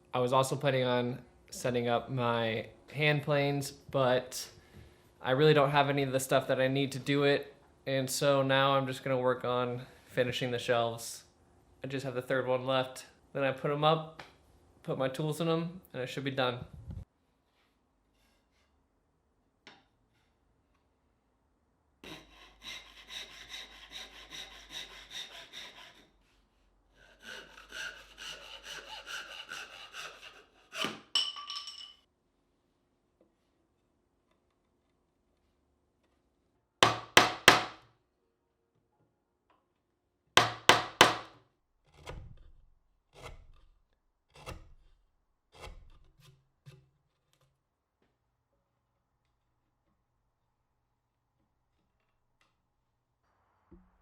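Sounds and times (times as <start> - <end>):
hand saw cutting wood: 22.0 - 31.1, 40.4 - 46.9.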